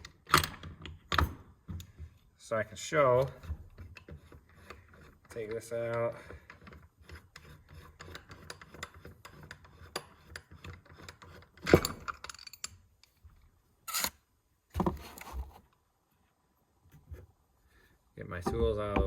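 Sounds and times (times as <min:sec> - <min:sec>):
metal parts and tools clinking: 0:08.6 - 0:13.2.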